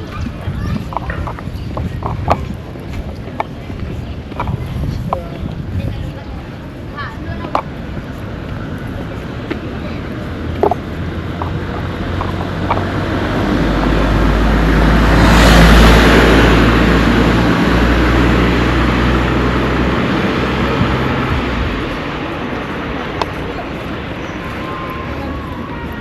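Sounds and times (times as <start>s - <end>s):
vehicle driving past: 10.1s - 26.0s.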